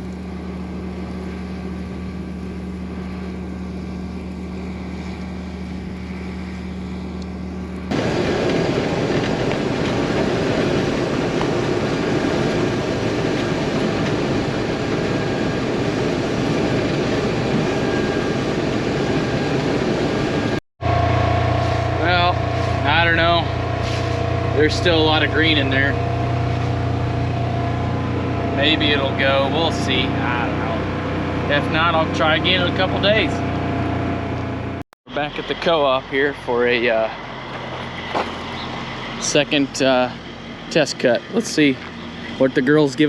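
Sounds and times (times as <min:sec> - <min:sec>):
dense rushing noise: 0:00.0 - 0:34.4
combine harvester engine drone: 0:00.0 - 0:43.0.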